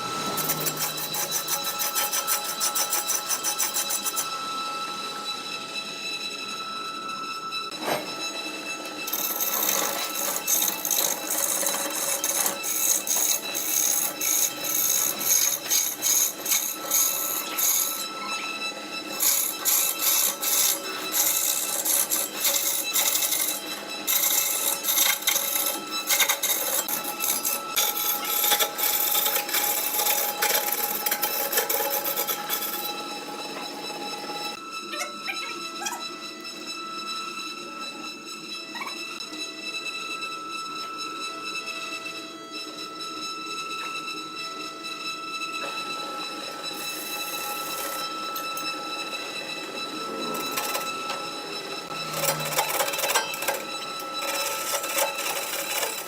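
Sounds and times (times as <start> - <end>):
lathe motor whine: 0.0 - 56.0
turning tool scraping wood: 0.1 - 4.4, 9.1 - 18.1, 19.1 - 33.0, 46.7 - 48.7, 51.9 - 56.0.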